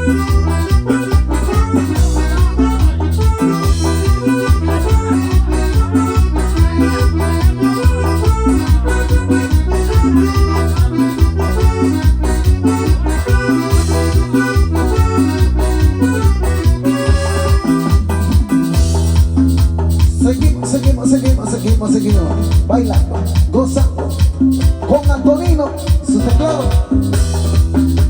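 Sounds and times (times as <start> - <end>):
electronic keyboard dance music: 0.0 - 28.0.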